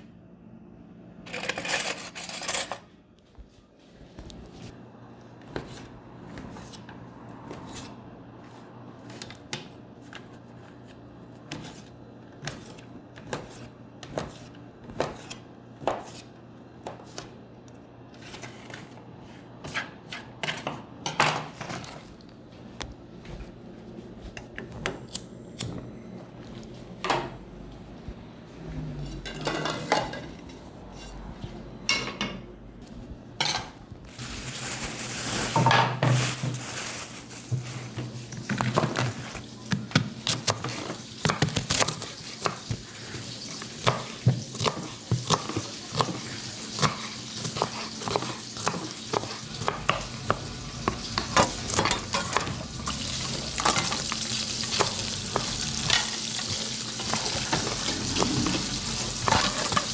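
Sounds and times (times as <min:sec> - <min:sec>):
dishes and cutlery clinking: 0:01.3 - 0:02.9, 0:29.2 - 0:31.1, 0:50.8 - 0:59.9
steady low hum: 0:22.2 - 0:34.2.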